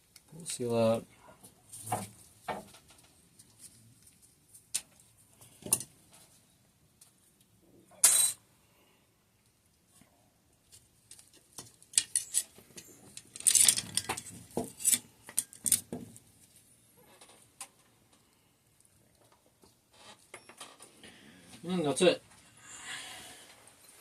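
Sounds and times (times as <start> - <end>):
small metal parts clicking: 11.1 - 15.9.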